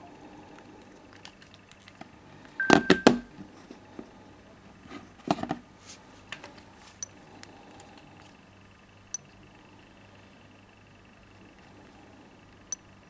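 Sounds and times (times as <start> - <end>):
phones being tapped and knocked: 2.6 - 3.3
short beep: 2.6 - 3.3.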